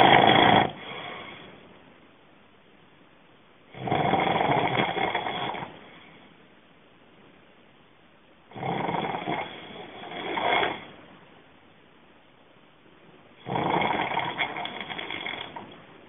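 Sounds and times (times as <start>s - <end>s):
person snoring: 0.0s - 1.4s, 3.7s - 5.7s, 8.5s - 10.9s, 13.4s - 15.6s.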